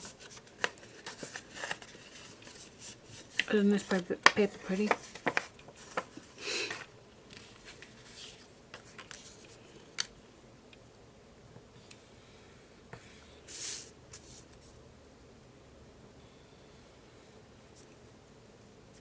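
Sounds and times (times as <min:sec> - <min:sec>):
paper rustling: 0:00.0 - 0:09.6.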